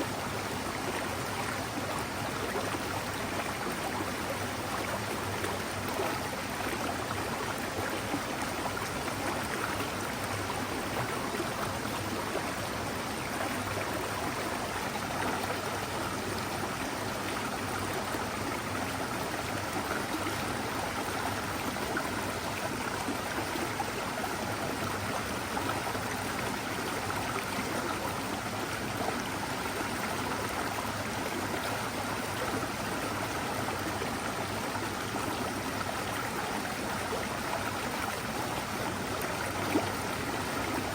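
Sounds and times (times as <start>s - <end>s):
stream babbling: 0.1s - 40.9s.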